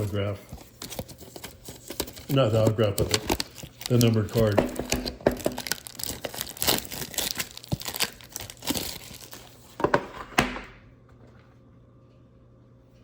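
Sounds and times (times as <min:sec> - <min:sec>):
plastic wrapping crinkling: 0:00.0 - 0:09.8.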